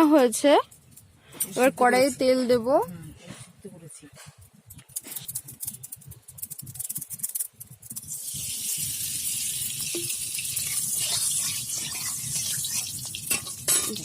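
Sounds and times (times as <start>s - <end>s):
oil sizzling and spitting: 4.9s - 14.0s.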